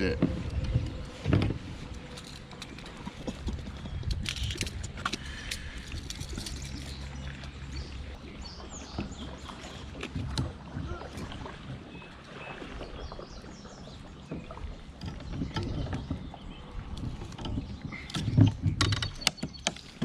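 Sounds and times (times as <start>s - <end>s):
gear knocking against kayak: 0.0s - 7.0s, 8.8s - 11.8s, 14.1s - 20.0s.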